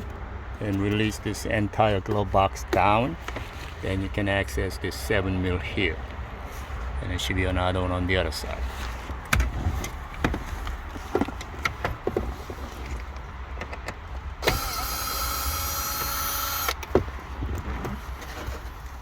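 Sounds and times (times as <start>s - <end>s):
cordless power driver spinning: 14.4s - 16.8s.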